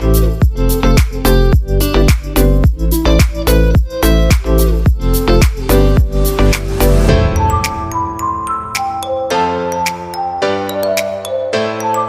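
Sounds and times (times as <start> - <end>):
dance music with fast beat: 0.0 - 10.1.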